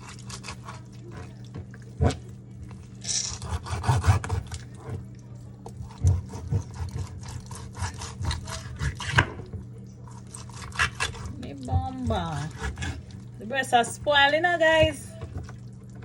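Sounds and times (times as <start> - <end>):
knife sawing through raw chicken: 0.0 - 1.3, 3.3 - 5.0, 5.8 - 9.4, 10.1 - 13.2.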